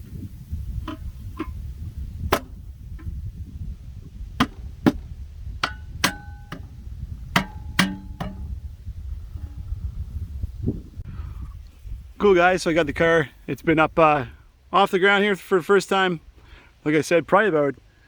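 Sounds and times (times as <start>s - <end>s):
low steady rumble: 0.0s - 14.8s
metallic clanks and knocks: 0.8s - 1.6s, 2.3s - 3.2s, 4.4s - 8.6s.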